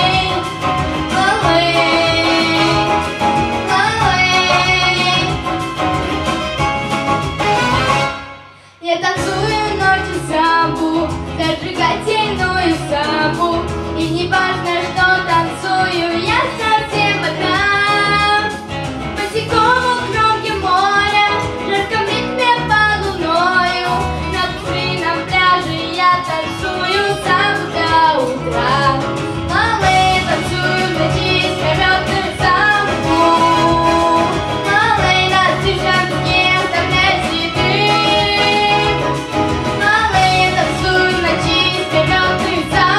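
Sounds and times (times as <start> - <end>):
violin playing samba melody: 0.0 - 8.4, 23.3 - 42.9
backing accompaniment: 0.0 - 8.6, 9.2 - 42.9.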